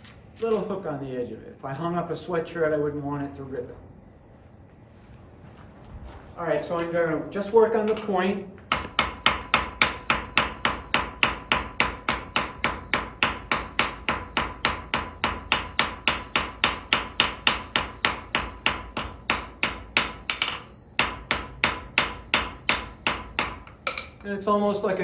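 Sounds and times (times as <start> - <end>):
hammer striking iron on anvil: 7.8 - 24.3.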